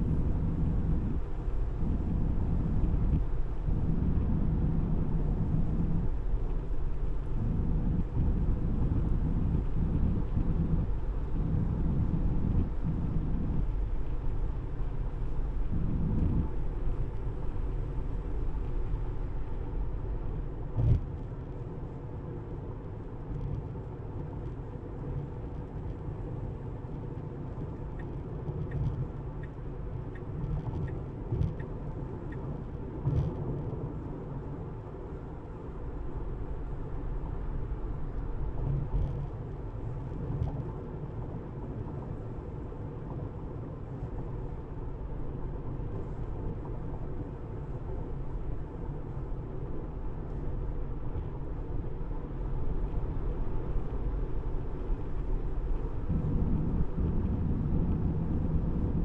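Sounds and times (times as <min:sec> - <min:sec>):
tyre and road rumble: 0:52.8 - 0:59.0.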